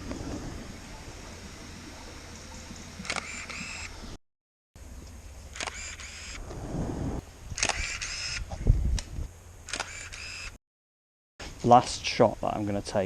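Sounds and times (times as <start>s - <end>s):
camera shutter click: 3.0s - 3.9s, 5.5s - 6.4s, 7.6s - 8.4s, 9.7s - 10.5s
film winding motor whir: 3.0s - 4.0s, 5.5s - 6.4s, 7.6s - 8.4s, 9.7s - 10.6s.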